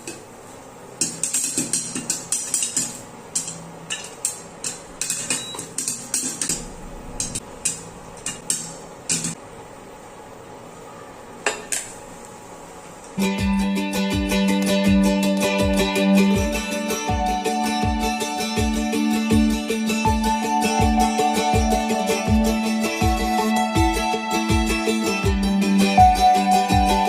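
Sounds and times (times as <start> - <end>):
popcorn popping in metal pot: 1.0 - 9.4.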